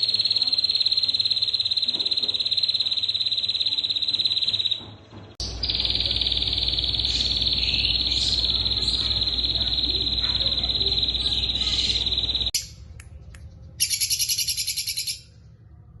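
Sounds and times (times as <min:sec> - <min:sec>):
high-pitched insect trill: 0:00.0 - 0:04.8, 0:05.7 - 0:12.6.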